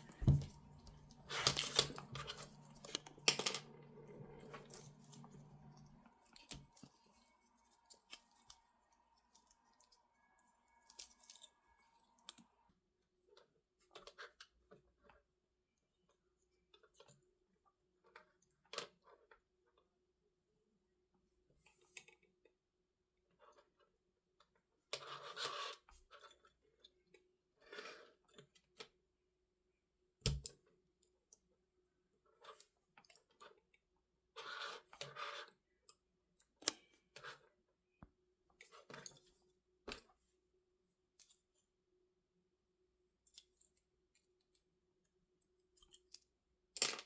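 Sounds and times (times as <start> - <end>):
faint steady hum: 0.0 - 12.7.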